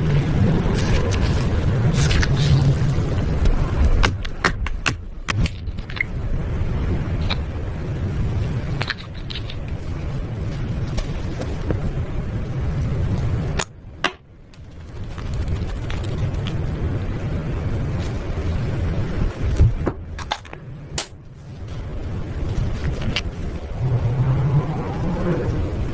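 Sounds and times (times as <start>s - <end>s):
slime being mixed by hand: 0.4s - 4.0s.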